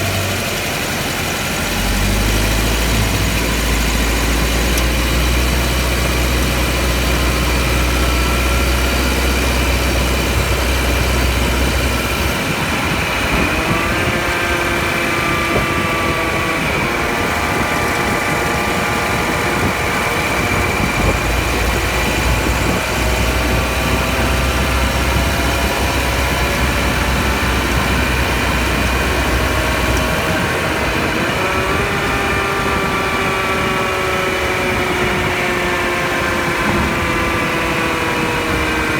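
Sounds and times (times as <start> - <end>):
axle grinding drone: 1.7 - 38.6.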